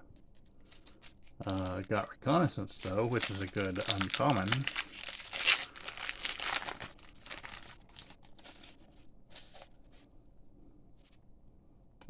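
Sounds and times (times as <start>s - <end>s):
cards rustling and flicking: 0.4s - 1.9s, 2.8s - 10.1s
wrapper crinkling: 0.4s - 2.0s, 2.7s - 10.1s.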